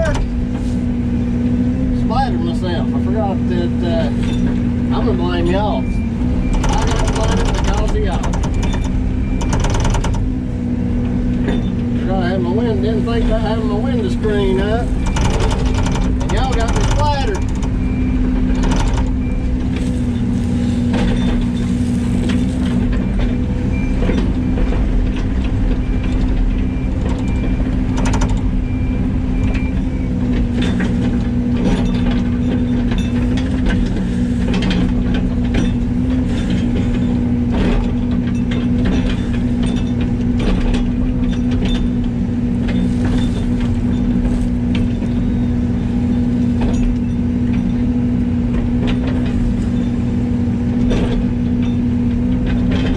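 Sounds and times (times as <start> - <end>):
engine running: 0.0 - 52.9
light rattles and clicks: 6.4 - 10.3, 13.2 - 28.5.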